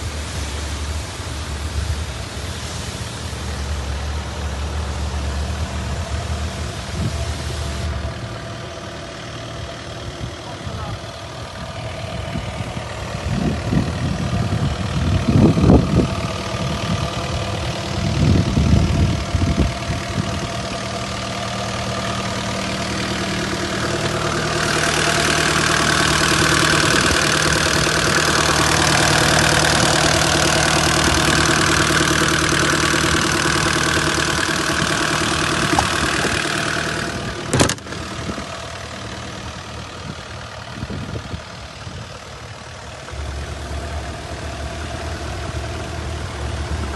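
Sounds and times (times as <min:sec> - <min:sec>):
loud steady hiss: 0:00.0 - 0:13.2
diesel engine running: 0:00.0 - 0:46.9.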